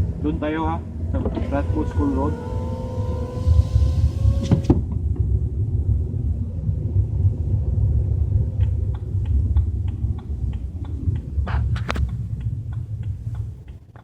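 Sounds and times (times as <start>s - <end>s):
low rumble inside car cabin: 0.0s - 14.0s
light regular ticking: 8.6s - 14.0s.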